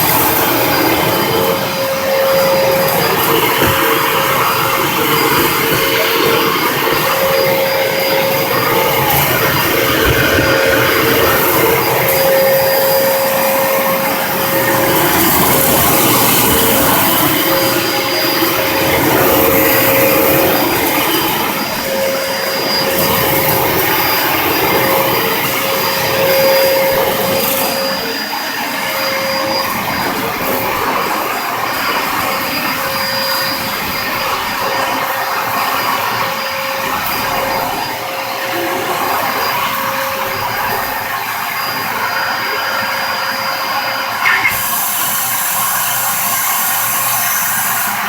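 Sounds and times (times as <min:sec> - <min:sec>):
vacuum cleaner running: 0:00.0 - 0:48.0.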